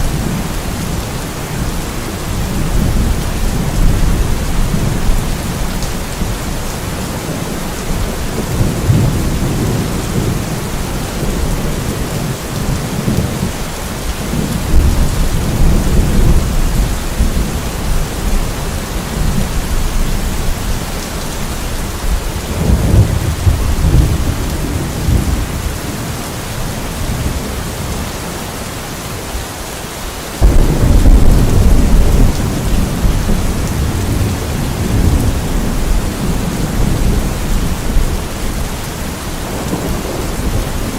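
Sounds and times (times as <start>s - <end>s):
thunder rumbling: 0.0s - 28.1s, 30.4s - 40.9s
heavy rain hissing: 0.0s - 40.9s.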